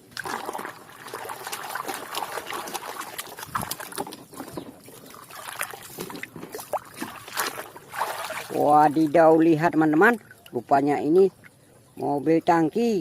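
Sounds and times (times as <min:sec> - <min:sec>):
water sloshing and trickling: 0:00.0 - 0:12.0.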